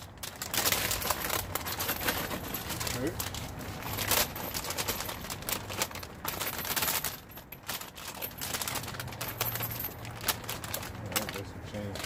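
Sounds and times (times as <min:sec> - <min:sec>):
coins clinking and jingling: 0:03.8 - 0:10.4.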